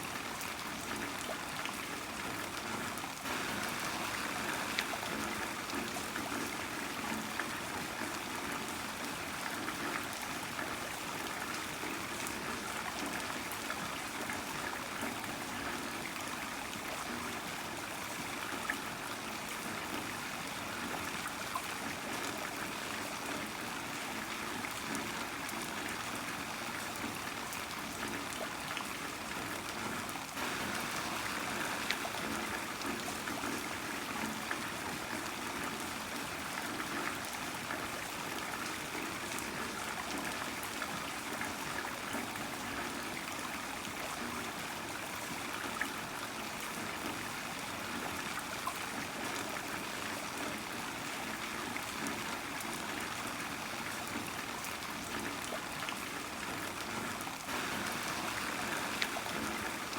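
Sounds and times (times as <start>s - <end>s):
heavy rain: 2.0s - 10.7s, 29.8s - 40.6s, 56.9s - 59.9s.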